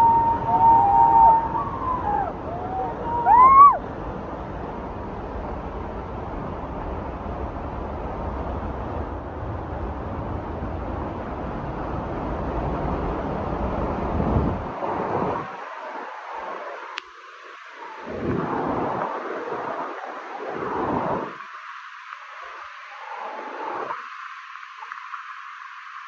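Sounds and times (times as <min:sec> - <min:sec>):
waterfall roaring: 0:00.0 - 0:03.9.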